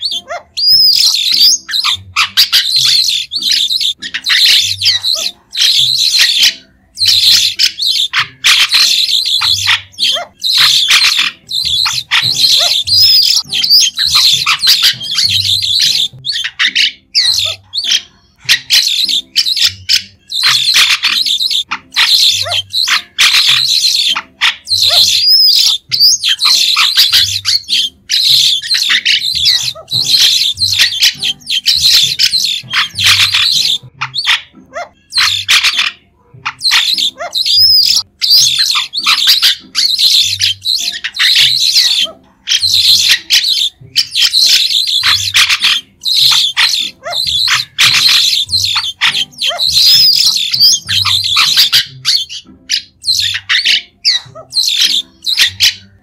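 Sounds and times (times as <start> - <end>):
starling chattering calls: 0.0 - 56.0.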